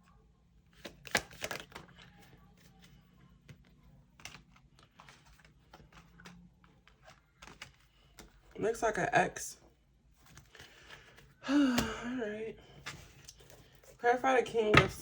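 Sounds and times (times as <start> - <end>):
cards being shuffled: 0.6 - 8.6.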